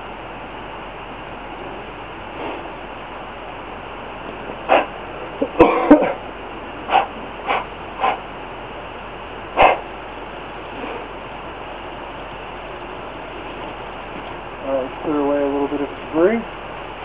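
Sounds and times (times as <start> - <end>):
steady background hiss: 0.0 - 17.0
dog barking: 4.7 - 4.9, 9.6 - 9.8.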